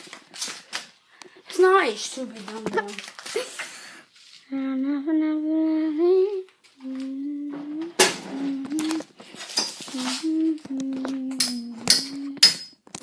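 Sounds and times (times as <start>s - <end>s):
child humming: 4.5s - 9.2s, 9.9s - 12.6s.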